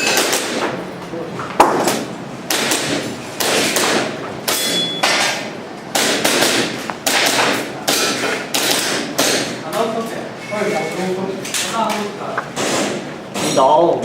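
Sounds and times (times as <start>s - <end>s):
airsoft pistol shots: 1.8s - 9.6s.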